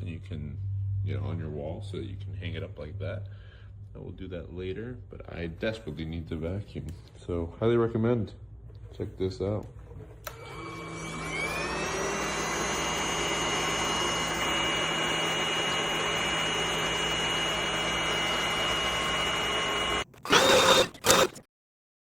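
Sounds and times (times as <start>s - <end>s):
vacuum cleaner motor whining: 10.2s - 21.5s.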